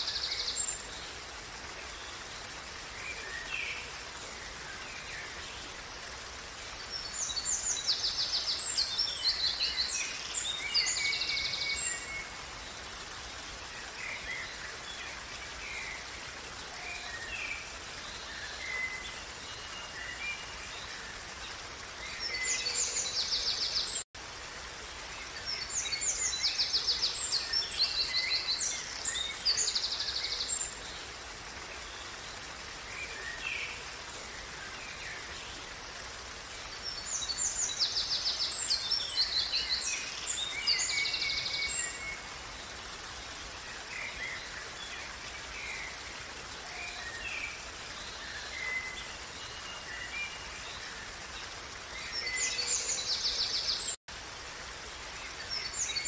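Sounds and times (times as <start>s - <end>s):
stream running: 0.0s - 56.0s.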